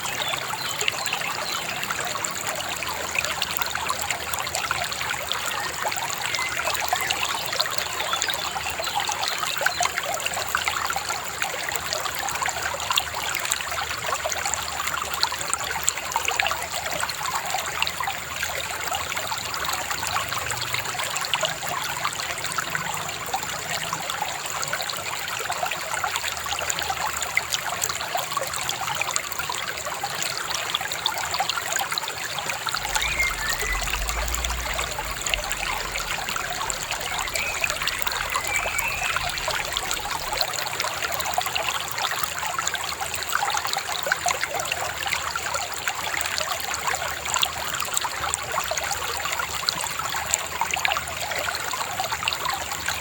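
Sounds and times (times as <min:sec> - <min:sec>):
river babbling over stones: 0:32.6 - 0:41.8.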